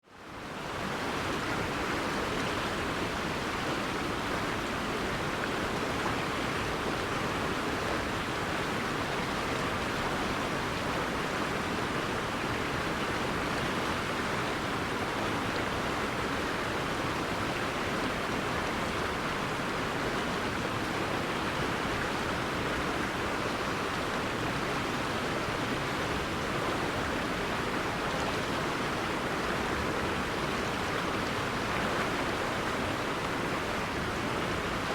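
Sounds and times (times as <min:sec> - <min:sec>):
river water rushing: 0:00.1 - 0:34.9.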